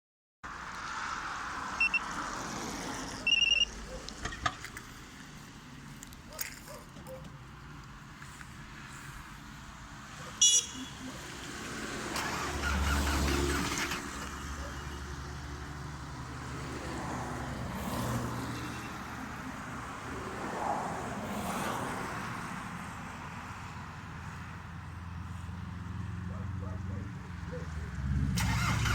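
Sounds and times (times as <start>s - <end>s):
vehicles passing by: 0.4s - 28.9s
car alarm beeping: 1.8s - 2.1s, 3.2s - 3.8s, 10.4s - 11.1s.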